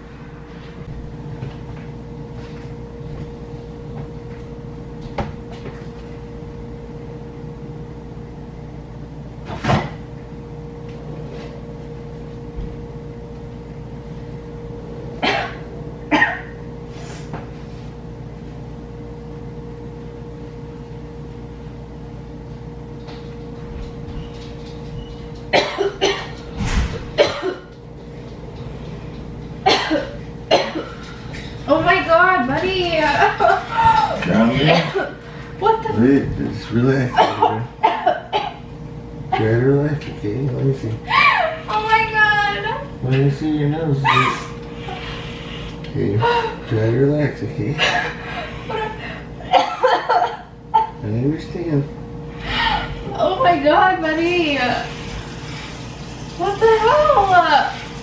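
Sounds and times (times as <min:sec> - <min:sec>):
steady low hum: 0:00.0 - 0:58.0
person coughing: 0:15.2 - 0:16.6, 0:25.5 - 0:26.4, 0:27.2 - 0:27.7, 0:29.6 - 0:31.0, 0:34.5 - 0:35.2, 0:37.1 - 0:38.6, 0:49.4 - 0:50.5.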